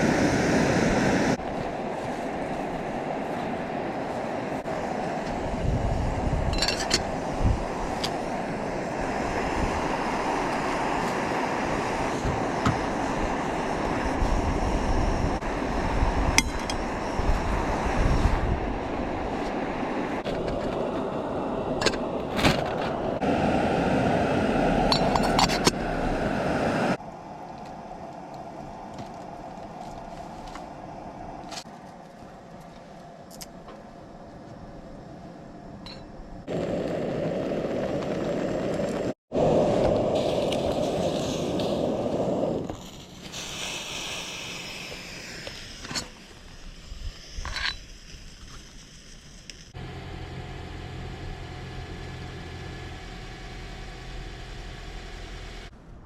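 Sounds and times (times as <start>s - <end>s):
steady rushing noise: 0.0s - 31.6s.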